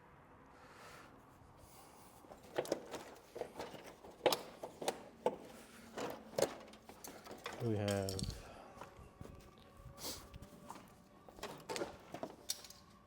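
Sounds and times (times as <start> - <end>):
plastic parts clicking and knocking: 2.4 - 8.4, 11.3 - 13.0.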